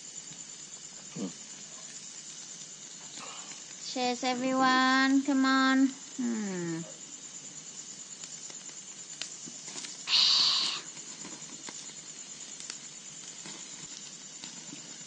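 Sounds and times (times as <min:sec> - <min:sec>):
insects trilling: 0:00.0 - 0:15.0
loud short hiss: 0:09.6 - 0:11.4.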